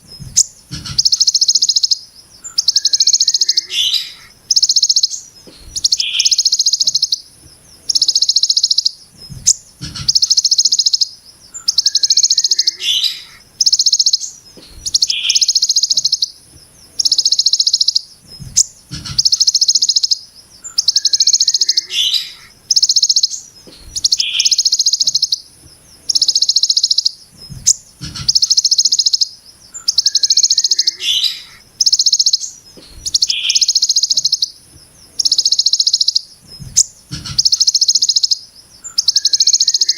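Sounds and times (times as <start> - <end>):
low thumps: 0.0 - 1.1, 9.2 - 10.2, 18.2 - 19.3, 27.4 - 28.4, 36.4 - 37.5
bird buzzing trills: 0.0 - 39.9.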